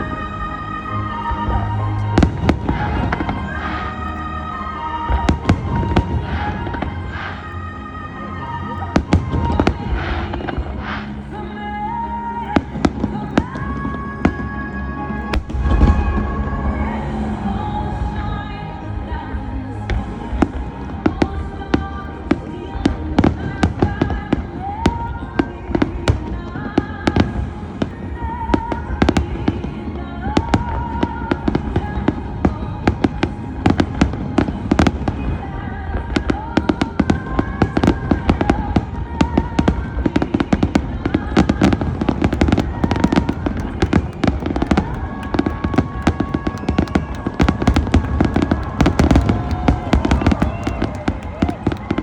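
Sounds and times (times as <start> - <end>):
music playing: 0.0 - 52.0
fireworks bangs and crackles: 1.2 - 4.2, 5.1 - 7.6, 8.7 - 11.2, 15.2 - 16.4, 36.0 - 52.0.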